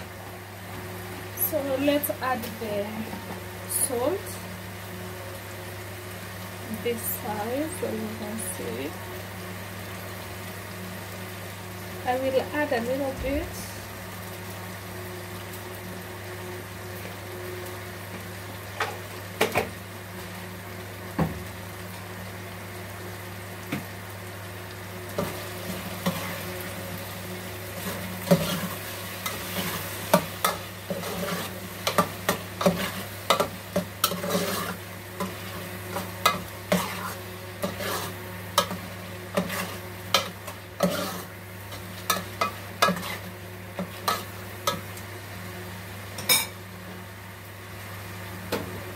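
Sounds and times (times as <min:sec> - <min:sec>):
food sizzling in a pot: 0:00.0 - 0:48.9
spoon stirring and scraping pot: 0:27.8 - 0:44.9.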